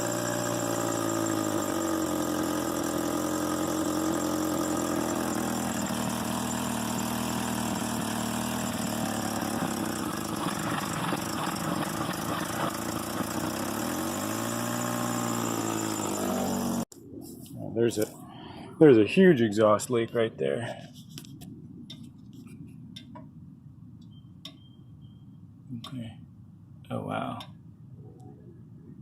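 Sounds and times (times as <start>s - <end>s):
car engine idling roughly: 1.2s - 14.0s.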